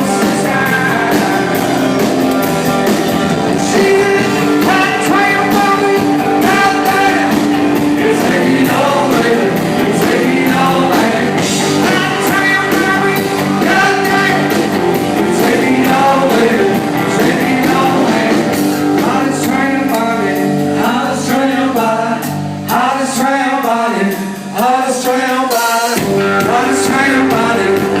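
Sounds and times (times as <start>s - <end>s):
person singing: 0.0s - 28.0s
rock band playing: 0.0s - 28.0s.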